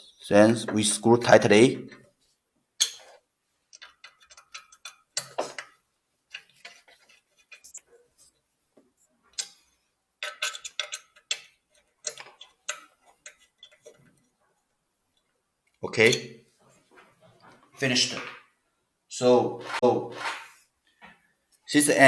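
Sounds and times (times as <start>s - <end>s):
small metal clicks and knocks: 2.8s - 7.9s, 9.3s - 14.2s.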